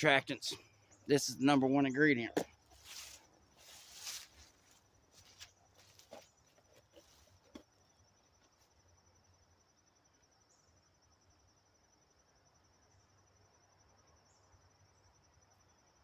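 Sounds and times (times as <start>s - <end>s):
faint rustling: 2.6s - 7.8s.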